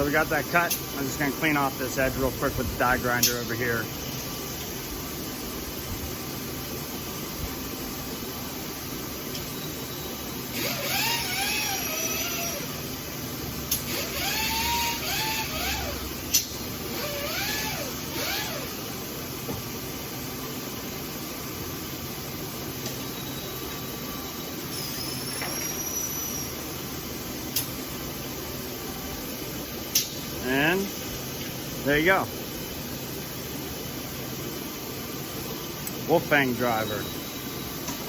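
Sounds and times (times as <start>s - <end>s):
steady background hum: 0.0s - 38.0s
die grinder whine on metal: 10.5s - 12.9s, 13.8s - 16.2s, 16.8s - 18.9s.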